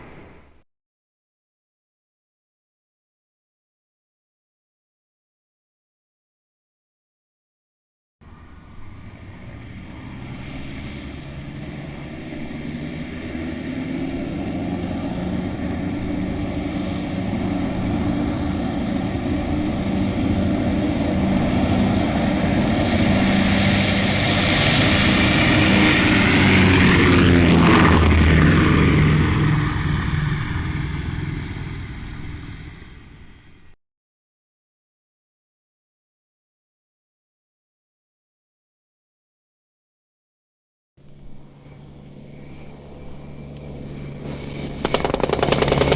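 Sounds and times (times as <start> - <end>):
propeller airplane passing overhead: 0.0 - 0.6, 8.2 - 33.8, 41.0 - 45.9.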